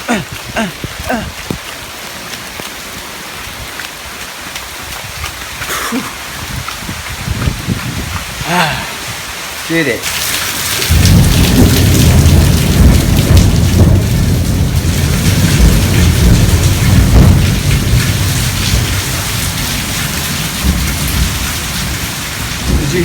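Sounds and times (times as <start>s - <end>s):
heavy rain pouring: 0.0s - 23.0s
thunder rumbling: 10.3s - 23.0s.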